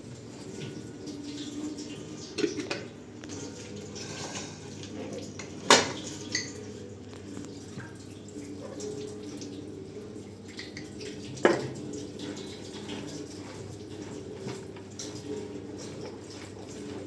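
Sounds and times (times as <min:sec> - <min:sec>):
running water: 0:00.0 - 0:17.0
dishes and cutlery clinking: 0:02.3 - 0:06.6
dishes clattering: 0:02.3 - 0:06.6, 0:11.4 - 0:11.8.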